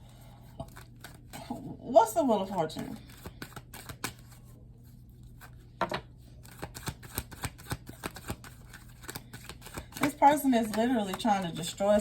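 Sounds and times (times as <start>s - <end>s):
cards shuffling and flicking: 3.1s - 4.4s, 5.4s - 11.4s.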